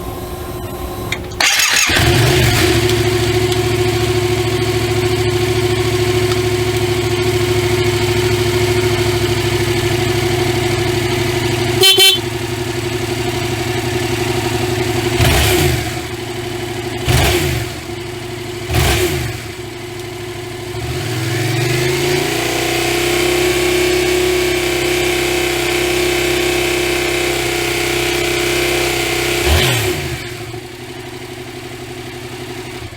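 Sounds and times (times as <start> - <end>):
motorcycle engine idling and revving: 0.0 - 32.9
short horn beep: 11.7 - 12.3.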